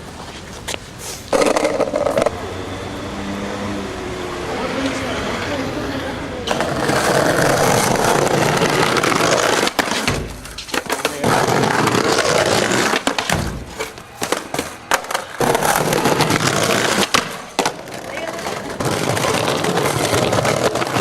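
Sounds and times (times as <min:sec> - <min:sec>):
skateboard wheels rolling on pavement: 0:00.0 - 0:21.0
skateboard clacks: 0:00.7 - 0:02.4, 0:06.4 - 0:21.0.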